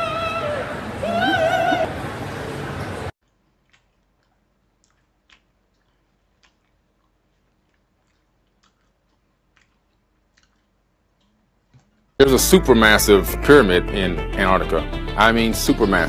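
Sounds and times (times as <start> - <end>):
person chewing crunchy food: 3.2 - 12.1
mouth clicks: 3.3 - 12.0.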